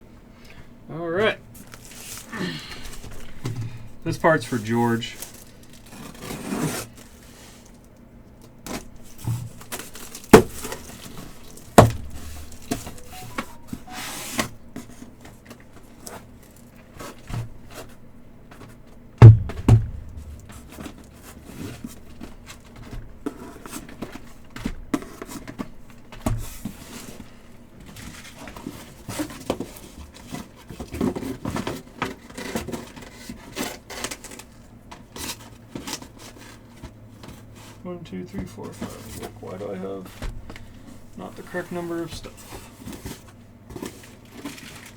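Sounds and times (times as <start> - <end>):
wrapping tearing and crinkling: 1.6 - 2.4, 5.1 - 7.6, 9.5 - 11.7, 43.8 - 44.9.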